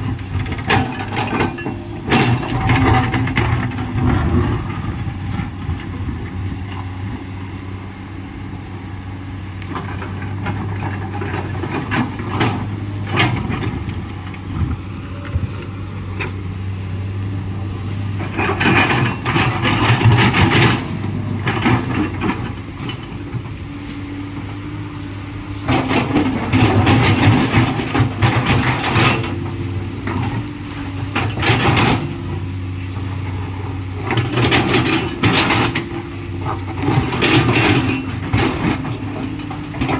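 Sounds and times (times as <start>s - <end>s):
excavator diesel engine running: 0.0s - 39.9s
clattering and scraping: 0.4s - 5.4s, 18.2s - 24.0s, 25.5s - 30.4s, 34.0s - 39.9s.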